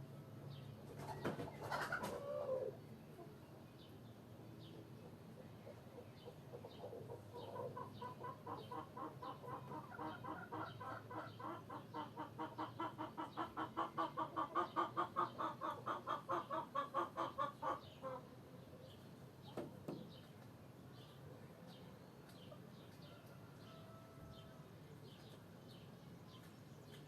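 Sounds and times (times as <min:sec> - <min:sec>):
chickens clucking: 0:00.5 - 0:03.5, 0:04.6 - 0:18.4.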